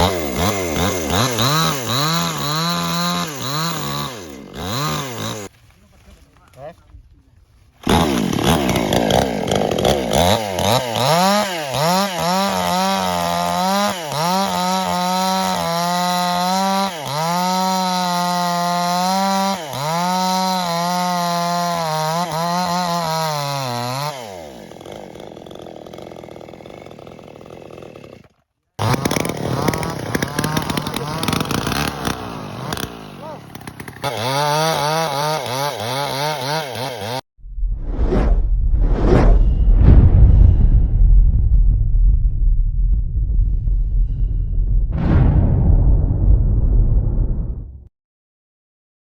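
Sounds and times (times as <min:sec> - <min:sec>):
chainsaw engine at high revs: 0:00.0 - 0:05.6, 0:07.8 - 0:37.2.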